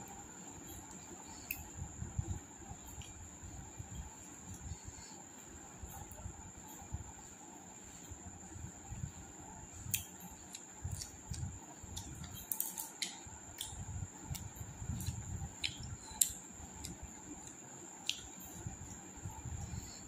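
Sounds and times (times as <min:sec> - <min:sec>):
mouth clicks and smacks while chewing: 0:09.9 - 0:19.1.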